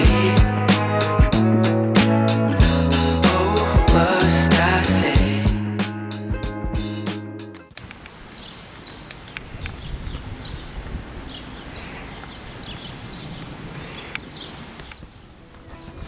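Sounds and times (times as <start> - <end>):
sharp clicks: 7.5 - 8.2
small birds chirping: 7.8 - 16.0.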